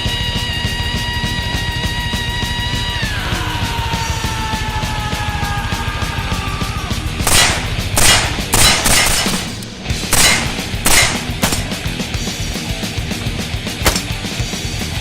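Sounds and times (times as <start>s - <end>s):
heavy metal music: 0.0s - 15.0s
rifle shots: 7.2s - 12.0s, 13.8s - 14.1s.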